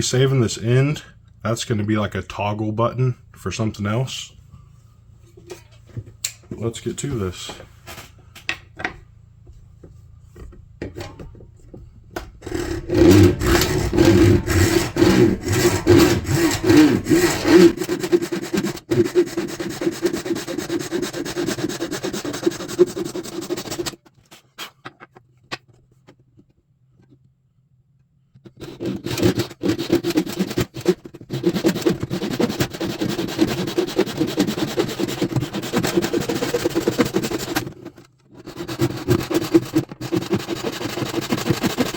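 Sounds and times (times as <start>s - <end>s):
hand saw cutting antler: 12.4s - 24.0s, 28.5s - 41.9s.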